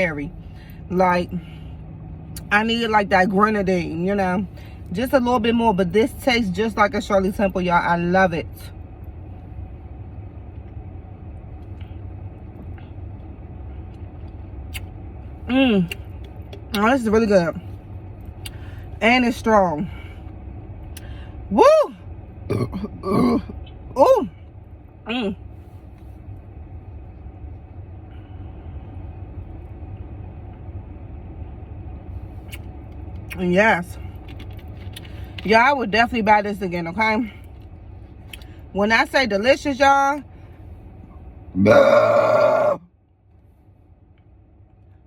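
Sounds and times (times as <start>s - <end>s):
vehicle rumble inside car: 0.0s - 45.0s.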